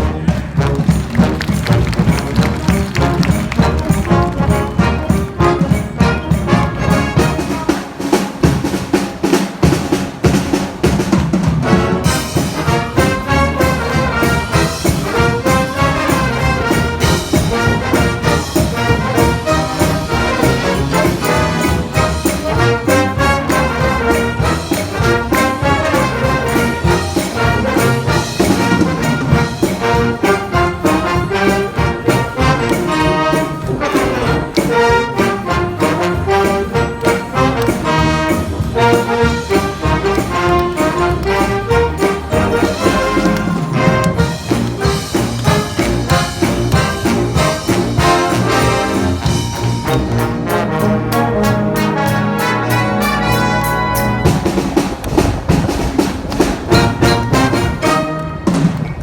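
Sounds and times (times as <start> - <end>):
drums: 0.0 - 59.0
trumpets and trombones: 0.0 - 59.0
wind band playing: 0.0 - 59.0.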